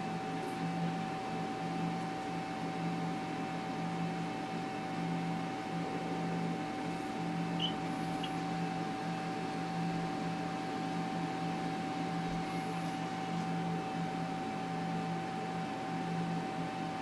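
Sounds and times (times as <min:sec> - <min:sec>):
constant high whine: 0:00.0 - 0:17.0
electrical hum and hiss: 0:00.0 - 0:17.0.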